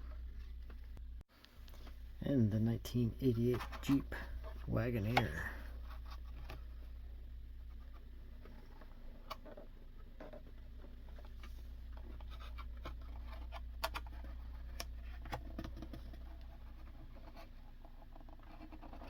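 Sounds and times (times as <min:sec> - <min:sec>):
low steady hum: 0:00.0 - 0:19.0
toy cars clicking and scratching: 0:07.6 - 0:19.0.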